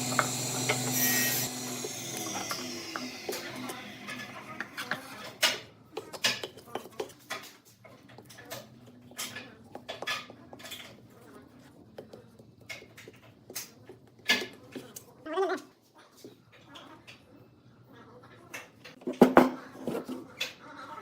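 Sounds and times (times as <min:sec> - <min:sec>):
hard objects clinking and knocking: 0:00.0 - 0:11.0.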